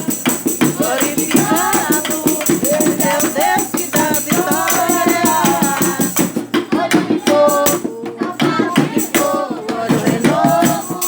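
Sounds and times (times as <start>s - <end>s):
fast percussion beat: 0.0s - 11.0s
person singing: 0.0s - 11.0s.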